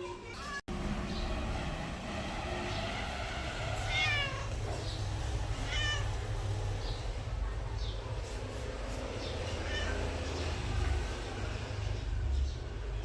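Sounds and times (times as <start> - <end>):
cat meowing: 3.8 - 4.6, 5.6 - 6.4, 9.3 - 10.5.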